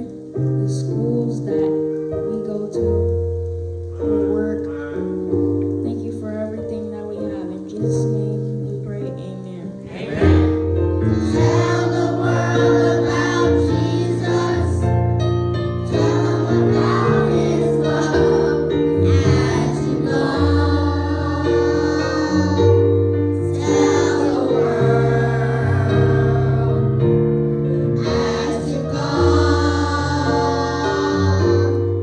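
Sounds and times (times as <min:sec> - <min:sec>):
sustained keyboard chords: 0:00.0 - 0:32.0
gospel choir singing: 0:09.8 - 0:32.0.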